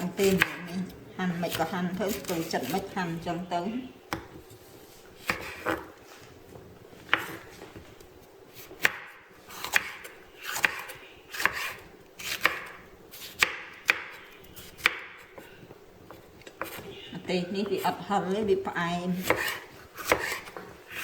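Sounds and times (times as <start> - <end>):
knife chopping on cutting board: 0.2 - 0.8, 5.2 - 5.9, 7.1 - 7.5, 8.5 - 15.4, 16.1 - 16.8, 19.2 - 21.0.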